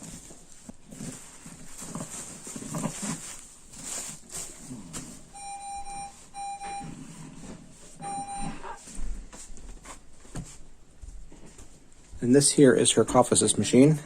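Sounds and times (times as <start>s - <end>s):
long electronic beeps: 5.4s - 6.9s, 8.0s - 8.8s.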